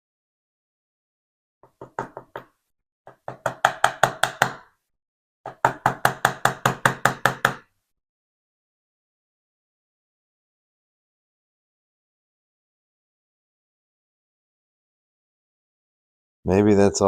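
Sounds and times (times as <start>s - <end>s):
rapid knocking on a lock: 3.1s - 4.6s, 5.5s - 7.7s.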